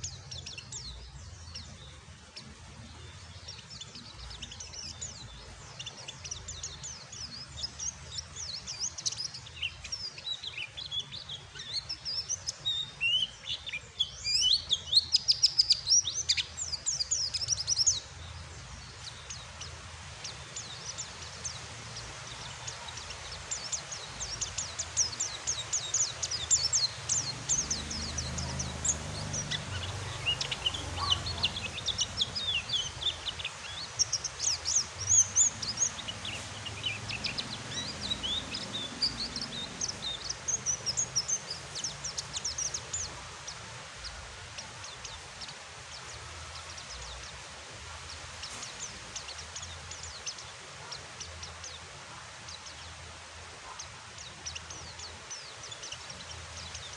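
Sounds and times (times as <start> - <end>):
birds twittering: 0.0 - 56.9
rain hissing: 18.3 - 51.9.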